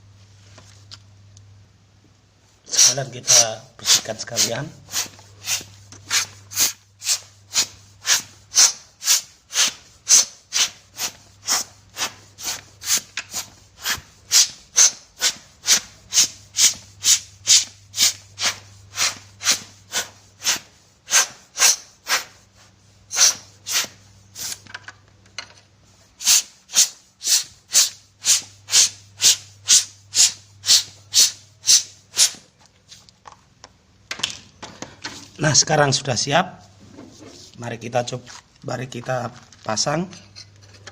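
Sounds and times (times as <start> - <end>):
short hissing cleaning strokes: 2.7 - 24.6, 26.0 - 33.1.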